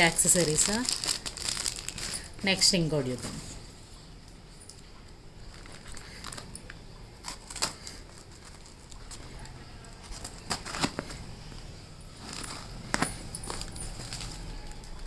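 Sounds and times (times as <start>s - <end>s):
packaging rustling: 0.0s - 2.4s, 5.4s - 15.0s.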